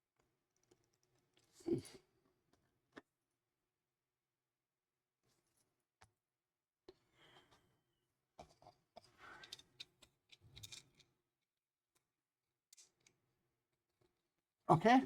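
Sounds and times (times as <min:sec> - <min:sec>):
plastic model parts clicking: 0:09.4 - 0:11.1.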